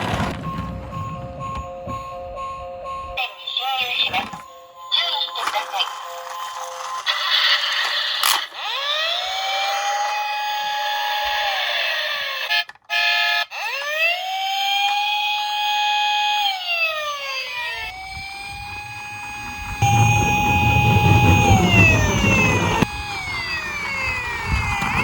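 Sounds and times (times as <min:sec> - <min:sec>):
police siren wailing: 0:08.2 - 0:25.0.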